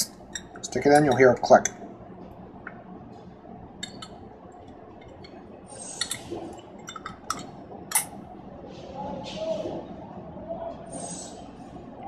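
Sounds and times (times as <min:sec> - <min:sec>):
metallic clicks of lock parts: 0:06.9 - 0:08.1.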